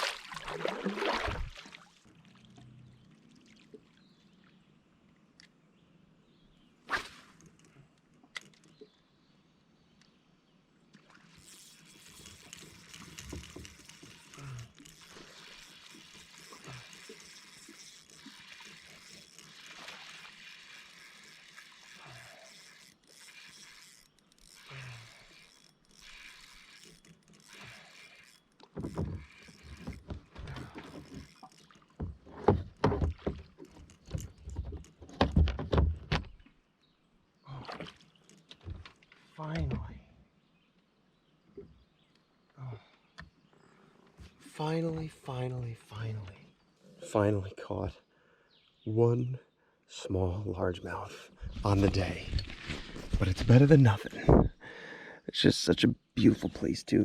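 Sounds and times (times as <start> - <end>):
knocks and splashes: 0.0 - 2.2, 12.1 - 20.9, 28.6 - 36.5, 37.5 - 40.0.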